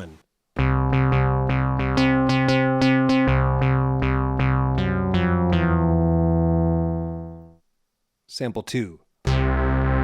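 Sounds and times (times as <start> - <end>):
synth bass sequence: 0.6 - 7.6, 9.3 - 10.0.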